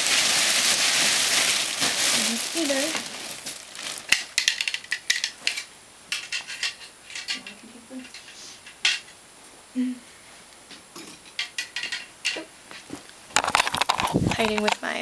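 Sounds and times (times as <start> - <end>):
small objects clicking and tapping: 4.0 - 9.1, 11.0 - 15.0.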